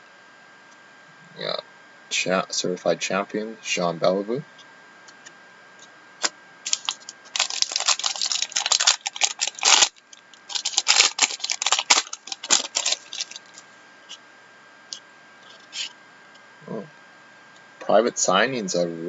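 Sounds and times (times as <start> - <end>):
card pack crinkling and clicking: 6.6 - 13.6, 14.9 - 15.9.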